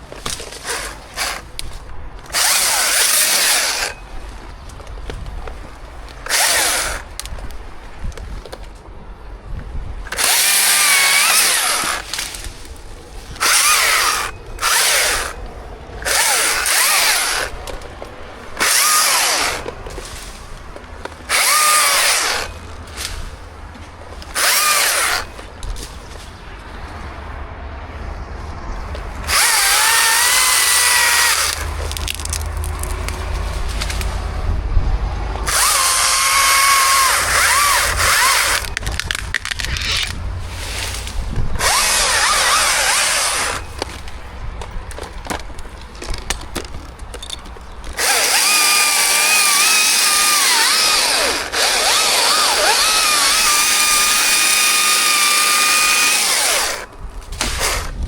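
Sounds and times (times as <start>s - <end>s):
chainsaw cutting wood: 0.1s - 4.4s, 6.1s - 7.5s, 10.1s - 12.7s, 13.3s - 23.3s, 24.2s - 25.5s, 29.2s - 33.2s, 35.4s - 40.2s, 40.8s - 44.0s, 47.9s - 58.0s.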